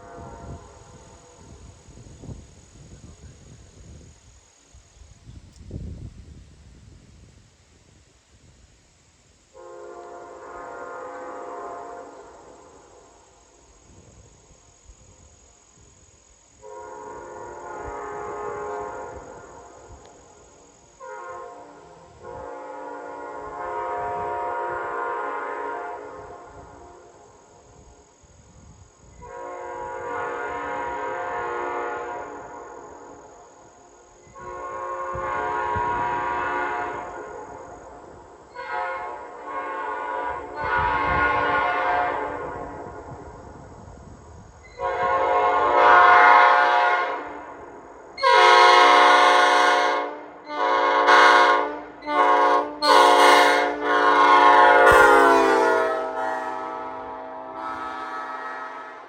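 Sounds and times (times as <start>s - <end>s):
air horn blasts: 0.0s - 1.7s, 9.5s - 12.6s, 16.6s - 19.6s, 21.0s - 27.1s, 29.2s - 32.7s, 34.4s - 37.4s, 38.5s - 42.7s, 44.8s - 47.4s, 48.2s - 59.0s.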